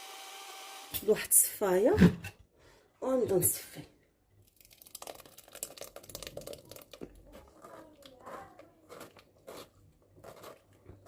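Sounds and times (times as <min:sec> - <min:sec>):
juice crackling through strainer: 0:04.4 - 0:11.0.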